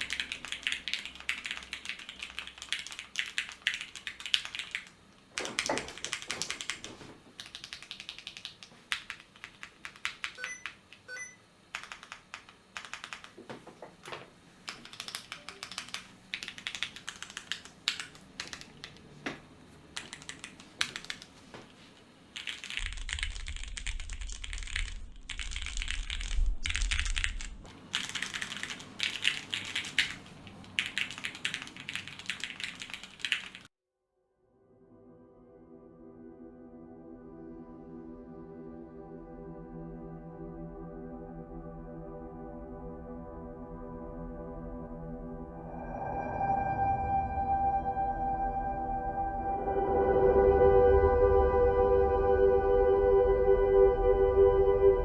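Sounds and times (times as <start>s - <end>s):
mechanical keyboard typing: 0.0s - 13.6s, 14.6s - 19.2s, 19.9s - 21.4s, 22.4s - 33.7s
low hum: 22.7s - 27.8s, 35.0s - 55.0s.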